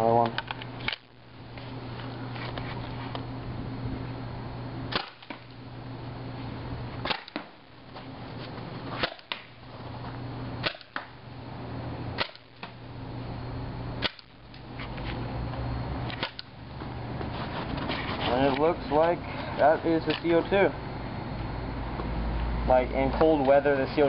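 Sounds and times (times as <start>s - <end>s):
paintball pistol shots popping: 4.9s - 5.5s, 7.0s - 7.6s, 9.0s - 9.5s, 10.6s - 11.2s, 12.2s - 12.8s, 14.0s - 14.4s, 16.1s - 16.5s.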